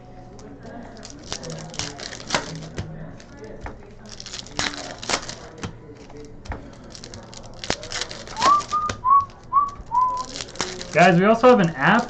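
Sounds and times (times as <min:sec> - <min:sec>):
trading cards being handled: 0:00.4 - 0:12.0
whistle-like chirps: 0:08.4 - 0:10.3.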